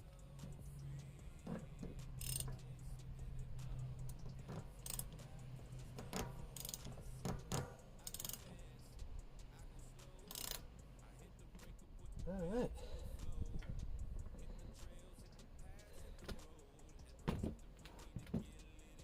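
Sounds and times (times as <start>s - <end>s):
faint background music: 0.0s - 19.0s
low steady hum: 0.0s - 19.0s
metallic tool clicks and clinks: 0.2s - 12.6s.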